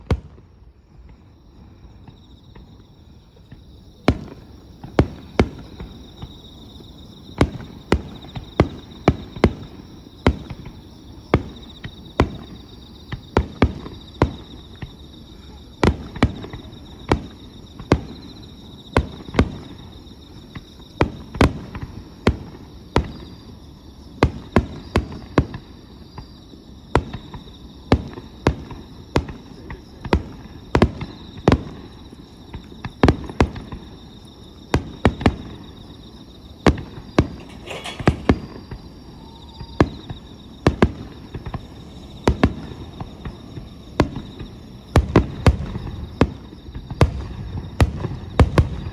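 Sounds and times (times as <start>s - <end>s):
insects chirring: 0.3s - 48.9s
fireworks bangs: 36.7s - 48.9s.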